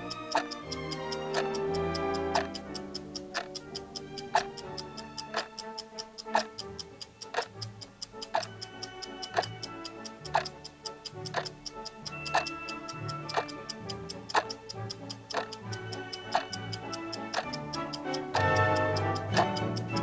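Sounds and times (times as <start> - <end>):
background music: 0.0 - 20.0
clock ticking: 0.0 - 20.0.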